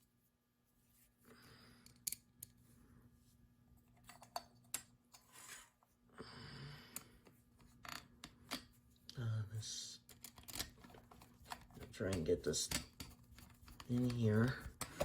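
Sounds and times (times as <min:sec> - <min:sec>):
soft rustle: 0:00.0 - 0:01.2
sharp clicks of small parts: 0:01.8 - 0:02.5.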